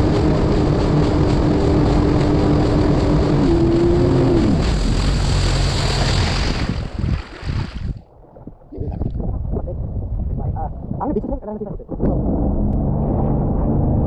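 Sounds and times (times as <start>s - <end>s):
jet ski engine running: 0.0s - 7.9s
rush of noise: 0.0s - 8.0s.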